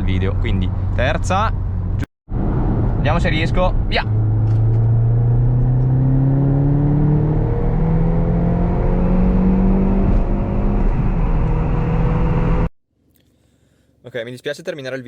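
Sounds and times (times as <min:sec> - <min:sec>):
car engine accelerating: 0:01.6 - 0:12.7.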